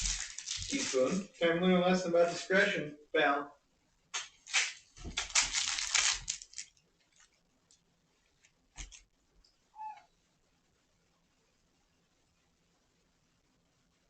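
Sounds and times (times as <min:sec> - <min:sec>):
cat mewing: 0:09.7 - 0:10.1.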